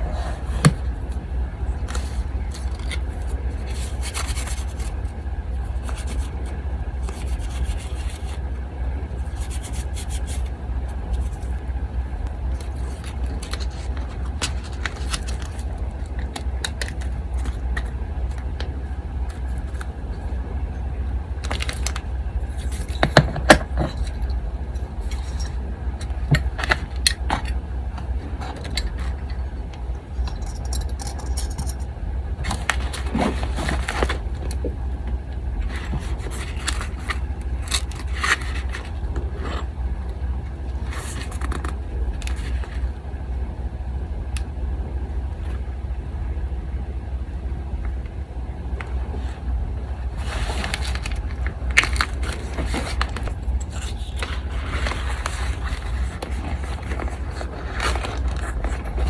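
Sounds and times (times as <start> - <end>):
paper rustling and scraping: 0.0 - 8.5, 9.1 - 11.6, 12.5 - 18.4, 21.4 - 23.2, 32.5 - 34.3, 35.6 - 39.0, 40.8 - 42.9, 50.1 - 59.0
electric fan humming: 0.0 - 59.0.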